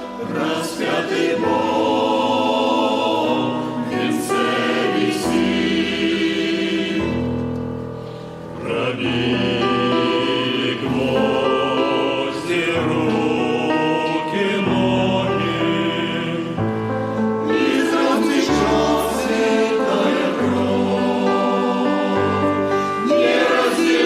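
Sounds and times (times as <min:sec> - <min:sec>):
choir singing: 0:00.0 - 0:07.5, 0:08.6 - 0:24.0.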